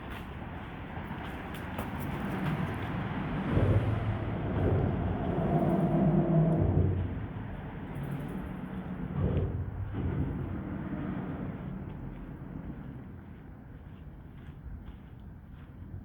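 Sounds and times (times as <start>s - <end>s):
vehicle passing on bridge: 2.2s - 13.3s.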